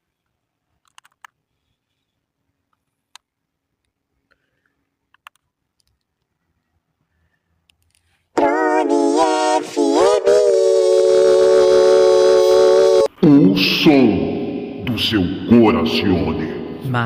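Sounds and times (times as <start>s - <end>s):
faint clicks: 2.7s - 6.7s.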